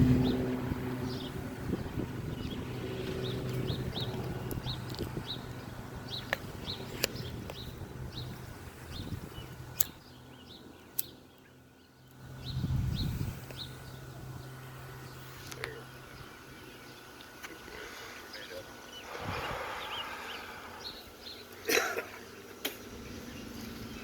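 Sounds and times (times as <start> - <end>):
wind rumble on microphone: 0.0 - 9.7, 12.4 - 13.8, 19.1 - 21.0
birds chirping: 0.0 - 24.0.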